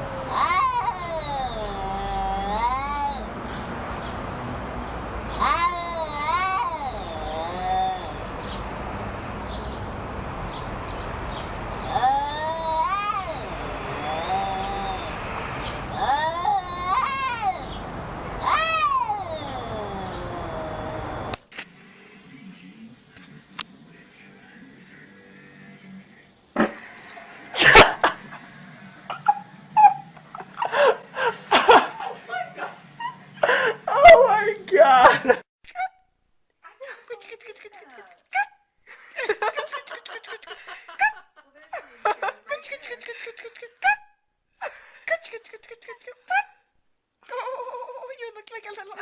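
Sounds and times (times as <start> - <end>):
cat yowling: 0.0 - 3.3, 5.4 - 8.2, 11.9 - 15.1, 15.9 - 17.8, 18.4 - 21.0, 29.1 - 31.0.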